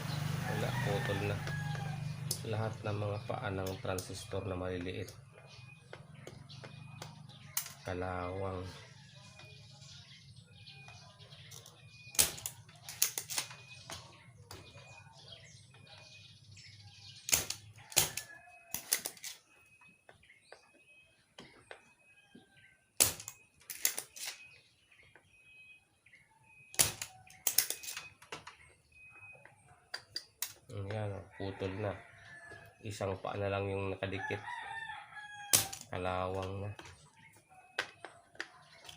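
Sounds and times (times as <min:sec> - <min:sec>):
hand tools clicking and tapping: 0:03.5 - 0:08.0, 0:10.8 - 0:14.8, 0:17.3 - 0:19.4, 0:23.0 - 0:24.4, 0:26.7 - 0:28.8, 0:29.9 - 0:31.1, 0:35.5 - 0:38.9.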